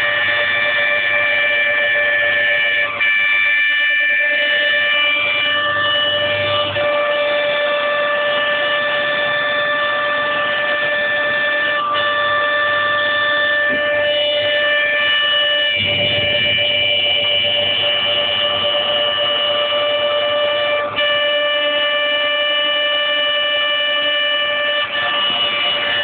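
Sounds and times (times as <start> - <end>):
milling machine whining: 4.3 - 23.3.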